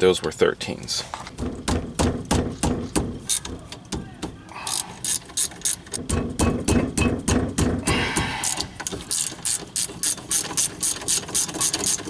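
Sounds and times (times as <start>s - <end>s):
socket ratchet clicking: 3.2s - 3.6s, 4.7s - 6.1s, 7.8s - 12.0s.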